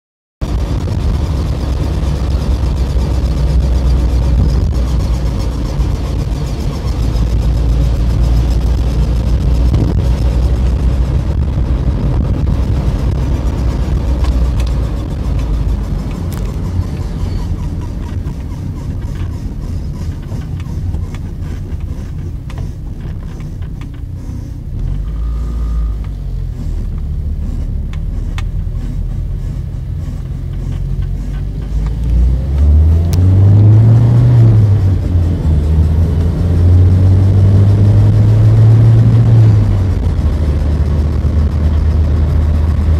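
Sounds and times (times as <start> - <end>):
car road and engine rumble: 0.4 - 42.9
wheel squeaking: 12.8 - 32.3.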